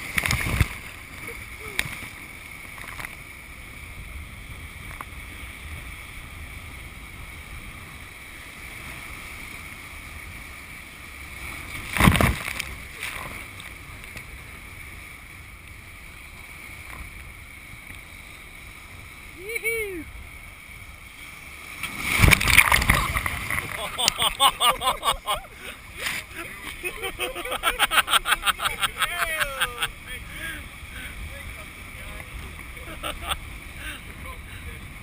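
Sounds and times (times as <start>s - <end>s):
wind on microphone: 0.0s - 8.2s, 21.8s - 29.0s
river water rushing: 0.0s - 35.0s.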